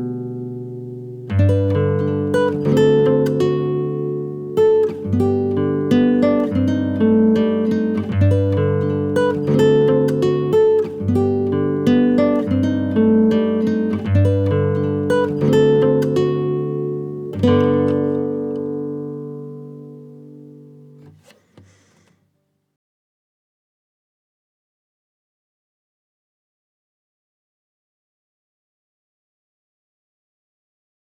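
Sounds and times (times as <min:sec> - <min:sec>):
plucked guitar pattern: 0:00.0 - 0:21.7.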